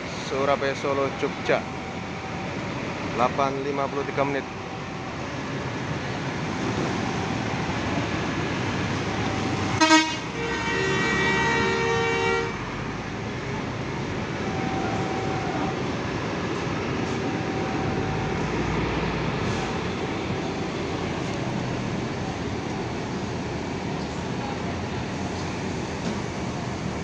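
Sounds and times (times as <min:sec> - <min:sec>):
bus engines running: 0:00.0 - 0:27.0
traffic: 0:00.0 - 0:27.0
bus horn: 0:09.3 - 0:12.8, 0:14.4 - 0:16.0.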